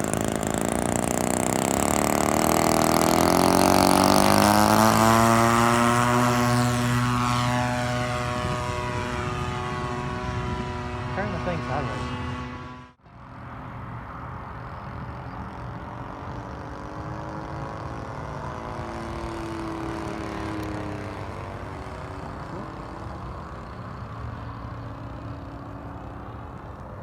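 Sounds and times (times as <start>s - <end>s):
model airplane engine: 0.0s - 27.0s
wind rumble on microphone: 5.2s - 12.4s.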